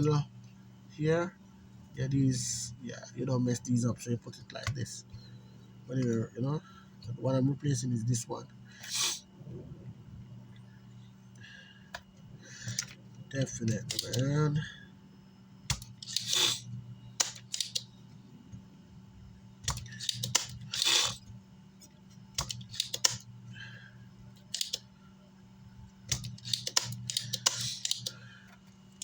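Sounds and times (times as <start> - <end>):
steady low hum: 0.0 - 29.0
hands and tools clicking: 24.4 - 24.8, 26.1 - 29.0.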